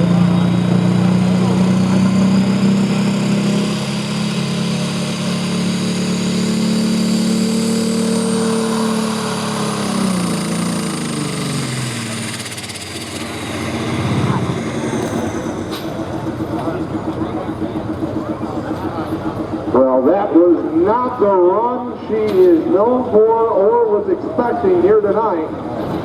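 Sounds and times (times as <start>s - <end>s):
tractor engine under load: 0.0s - 26.0s.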